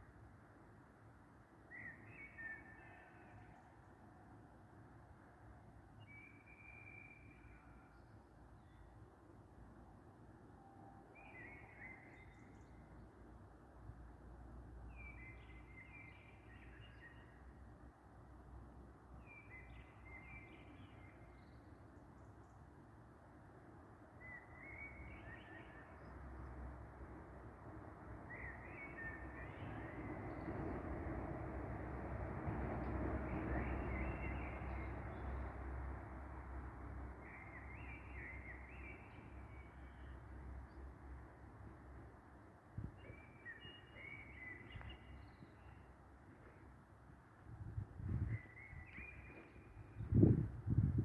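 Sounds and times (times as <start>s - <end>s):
birds singing whistled notes: 1.7s - 3.5s, 6.0s - 8.9s, 10.6s - 13.0s, 14.9s - 17.4s, 19.2s - 22.6s, 24.2s - 26.2s, 28.3s - 30.6s, 37.2s - 40.8s, 42.8s - 45.9s, 48.0s - 50.4s.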